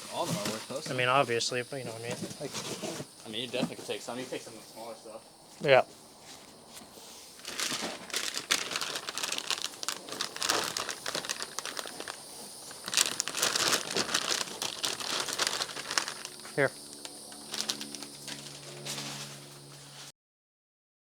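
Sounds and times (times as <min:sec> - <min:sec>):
packaging crinkling: 0:06.9 - 0:19.4.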